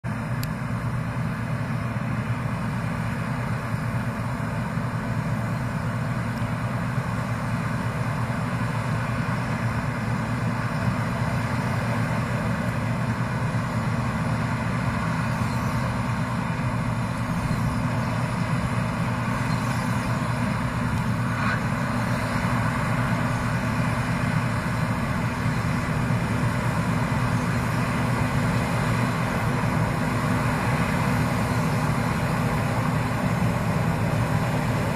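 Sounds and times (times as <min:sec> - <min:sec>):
combine harvester running: 0:00.0 - 0:34.9.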